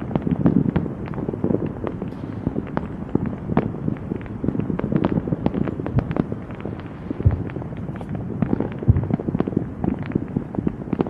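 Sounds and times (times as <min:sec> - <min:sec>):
fireworks pops and cracks: 0:00.0 - 0:11.0
low rumble: 0:02.0 - 0:09.2.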